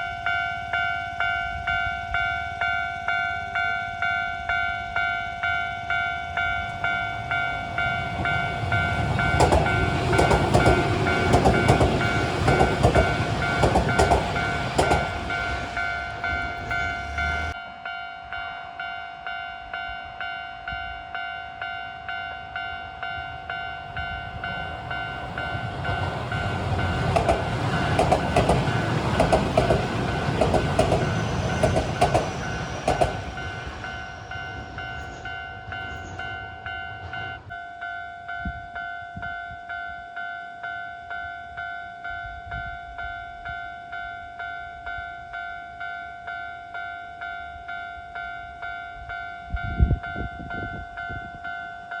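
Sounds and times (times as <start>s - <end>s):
level crossing alarm clanging: 0.0s - 17.6s, 22.5s - 38.6s
train wheels clattering over rails: 8.1s - 17.6s, 24.6s - 35.2s.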